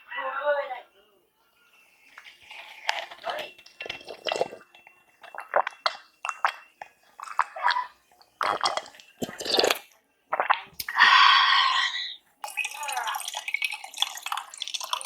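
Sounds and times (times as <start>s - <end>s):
wet chewing sounds: 2.1s - 11.5s.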